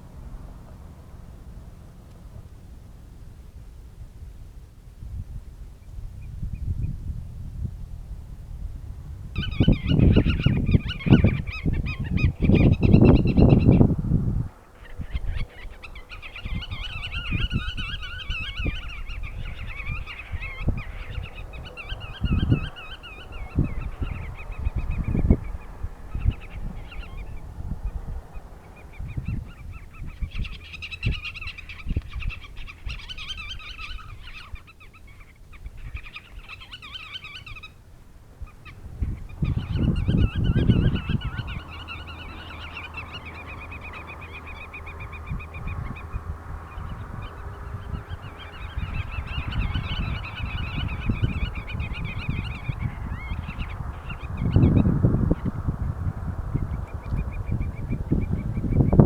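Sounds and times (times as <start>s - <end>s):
birds calling rapid repeated notes: 14.5s - 37.8s, 38.4s - 55.4s.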